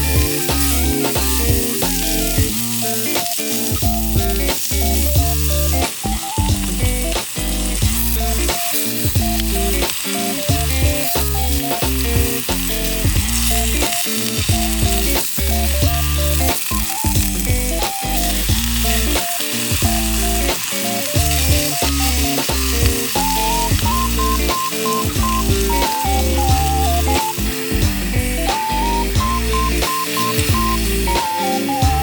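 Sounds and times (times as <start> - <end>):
high hiss: 0.0 - 32.0
music with bass and beat: 0.0 - 32.0.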